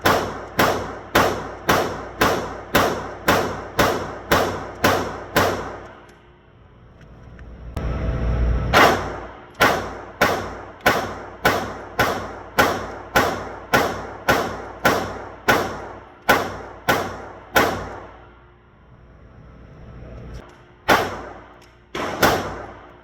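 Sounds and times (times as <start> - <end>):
gunshots with ringing tail: 0.0 - 6.0, 8.7 - 18.2, 20.8 - 23.0.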